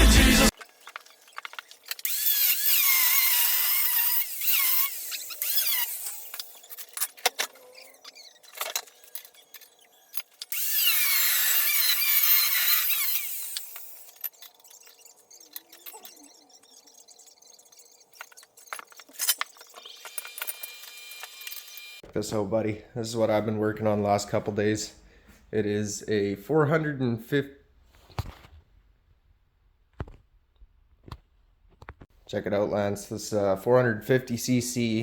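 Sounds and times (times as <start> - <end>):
power tool whining: 0.0 - 22.0.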